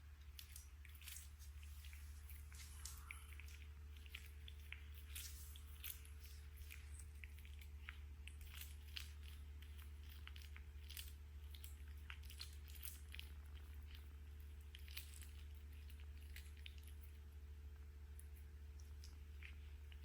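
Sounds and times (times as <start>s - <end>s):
cat crunching on bird: 0.0s - 20.0s.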